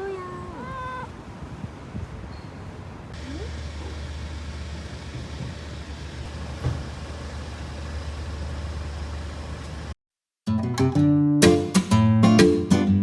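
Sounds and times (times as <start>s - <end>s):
vehicle engine humming: 1.2s - 10.0s.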